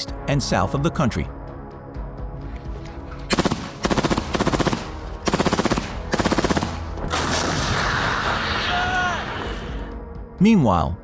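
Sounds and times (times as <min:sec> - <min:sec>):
automatic weapon fire: 0:03.3 - 0:08.6.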